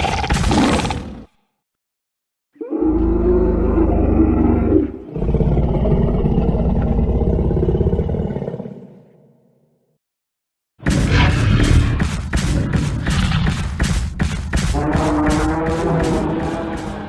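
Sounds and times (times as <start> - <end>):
dinosaur roar: 2.6 - 9.2, 14.7 - 17.0.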